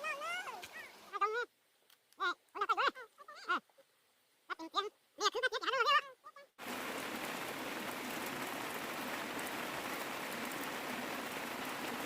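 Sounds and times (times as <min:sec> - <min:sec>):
rain falling steadily: 0:00.0 - 0:05.2, 0:06.6 - 0:12.0
faint raindrop ticks: 0:01.7 - 0:03.2.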